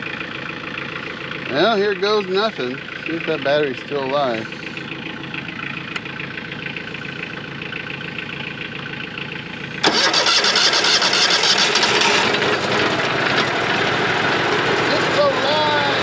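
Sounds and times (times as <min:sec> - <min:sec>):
sawmill engine starting: 0:09.8 - 0:16.0.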